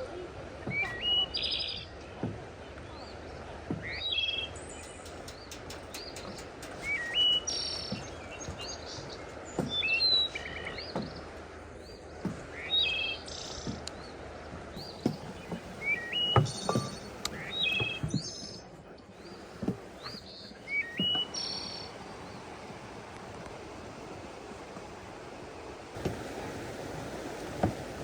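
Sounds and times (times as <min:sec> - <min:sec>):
steady outdoor hiss: 0:00.0 - 0:28.0
small birds chirping and singing: 0:00.6 - 0:22.6
soft footsteps: 0:14.5 - 0:18.4, 0:19.1 - 0:25.0, 0:25.9 - 0:28.0.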